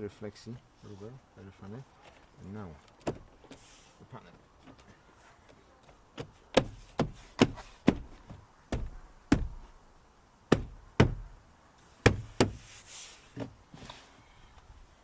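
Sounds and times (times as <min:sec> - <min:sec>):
short rustle: 0:00.1 - 0:08.3, 0:11.8 - 0:14.6.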